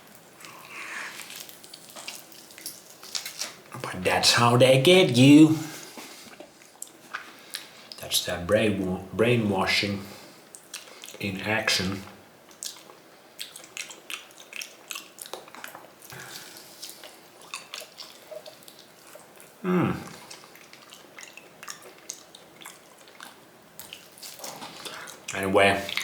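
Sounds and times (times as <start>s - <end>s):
person chewing food: 0.0s - 3.7s, 5.7s - 8.0s, 10.2s - 11.2s, 12.4s - 26.0s.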